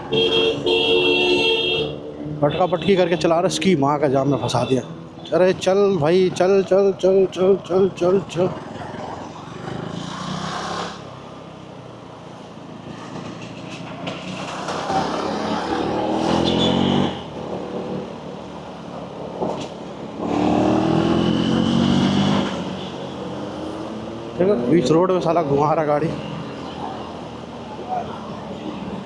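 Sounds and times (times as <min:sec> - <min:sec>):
traffic noise: 0:00.0 - 0:29.0
motorcycle engine accelerating: 0:20.1 - 0:22.6.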